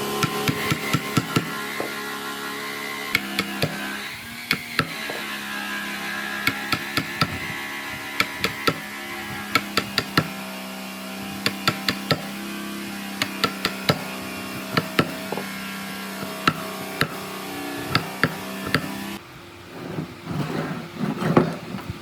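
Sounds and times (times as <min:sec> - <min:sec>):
steady low hum: 0:00.0 - 0:22.0
tool knocking on wood: 0:00.2 - 0:02.0, 0:03.1 - 0:05.3, 0:06.4 - 0:07.6, 0:08.2 - 0:10.4, 0:11.4 - 0:12.4, 0:13.2 - 0:15.5, 0:16.2 - 0:17.3, 0:17.9 - 0:19.2.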